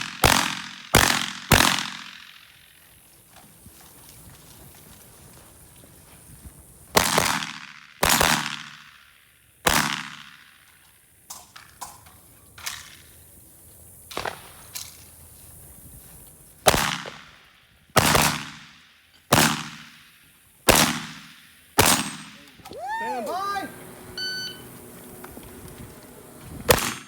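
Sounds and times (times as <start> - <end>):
shotgun shots echoing: 21.8 - 22.4.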